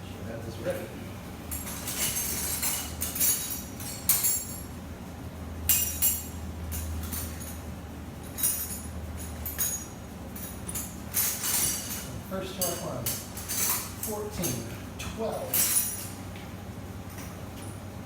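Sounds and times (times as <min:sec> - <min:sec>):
steady low hum: 0:00.0 - 0:18.0
metal hand tools clinking: 0:08.3 - 0:14.7, 0:15.4 - 0:16.2.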